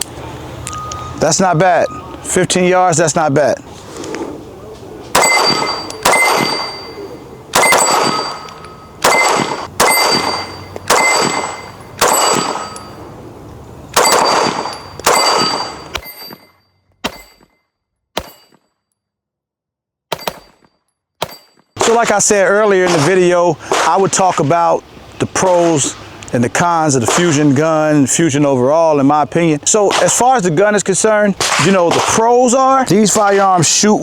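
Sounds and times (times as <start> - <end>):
pistol shots: 5.1 - 12.9, 13.9 - 16.3, 20.1 - 24.1, 31.4 - 32.3.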